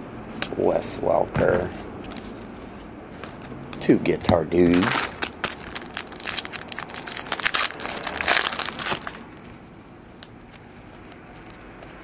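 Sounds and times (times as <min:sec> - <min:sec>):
wrapper crinkling and rustling: 0:04.6 - 0:12.0.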